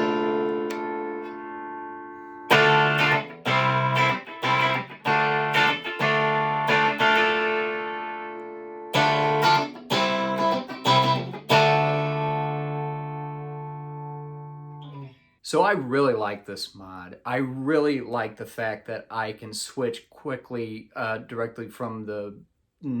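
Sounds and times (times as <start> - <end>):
electric guitar chords: 0.0 - 15.2.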